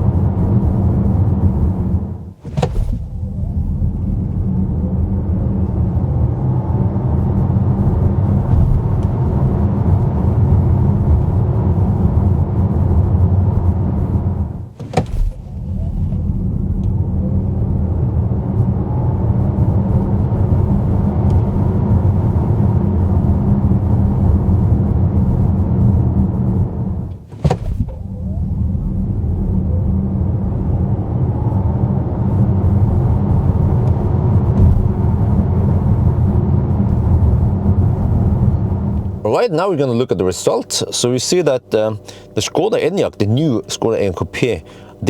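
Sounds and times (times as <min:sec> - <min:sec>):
tyre and road noise: 0:01.4 - 0:05.9, 0:07.1 - 0:17.1, 0:22.7 - 0:29.2, 0:32.4 - 0:39.3.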